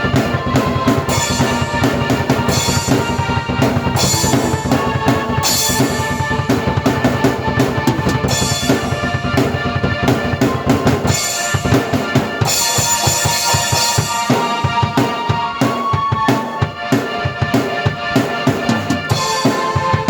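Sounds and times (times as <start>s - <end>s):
drum beat: 0.0s - 20.0s
sustained keyboard chords: 0.0s - 20.0s.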